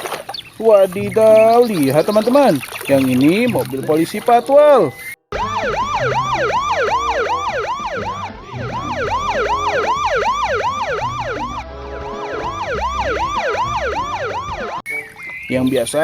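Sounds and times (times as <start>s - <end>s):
police siren yelp: 4.8s - 14.8s.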